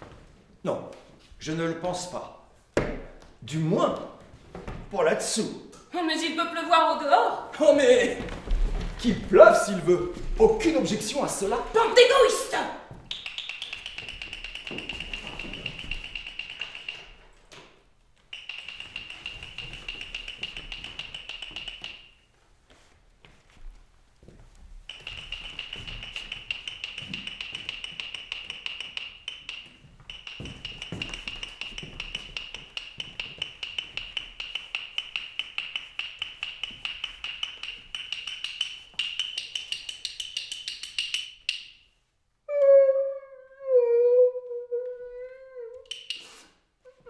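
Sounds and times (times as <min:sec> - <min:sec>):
rapid tapping on percussion: 0:08.2 - 0:17.4, 0:18.2 - 0:22.2, 0:24.8 - 0:41.8
pitched tone gliding downward: 0:42.5 - 0:45.9.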